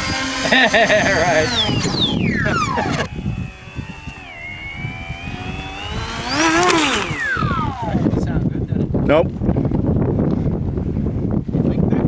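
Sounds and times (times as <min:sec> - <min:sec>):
model aircraft motor whine: 0:00.0 - 0:08.4.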